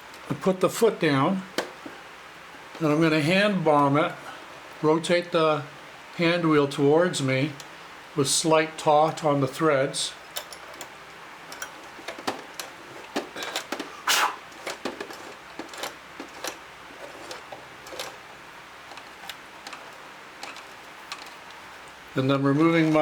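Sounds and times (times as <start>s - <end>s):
rustle: 0.0s - 23.0s
sewing machine mechanical clicks: 14.5s - 18.2s.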